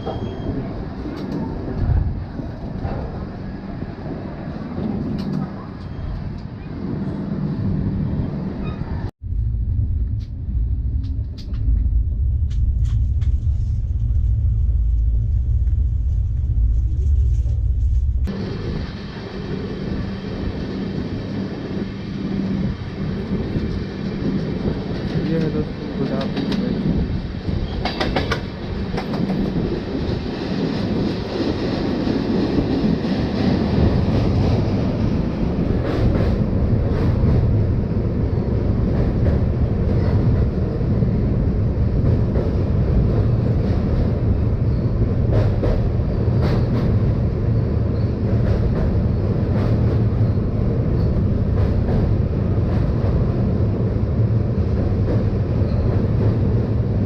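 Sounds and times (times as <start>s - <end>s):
train rumbling on rails: 0.0s - 57.0s.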